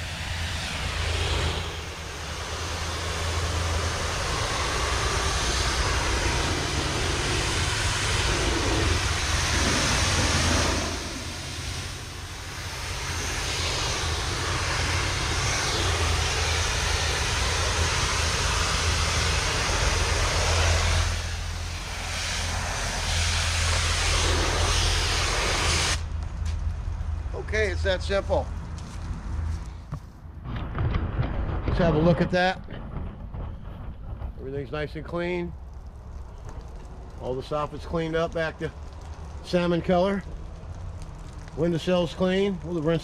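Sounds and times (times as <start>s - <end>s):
pressure washer engine running: 0.0s - 26.0s.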